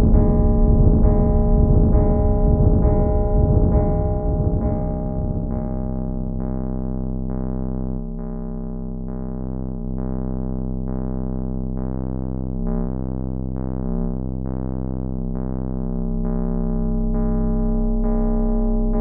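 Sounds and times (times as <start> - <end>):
sustained low synth tones: 0.0 - 19.0.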